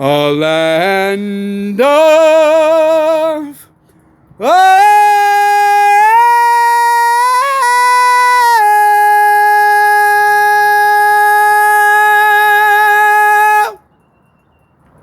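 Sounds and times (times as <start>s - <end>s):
person singing a long note: 4.4s - 13.8s.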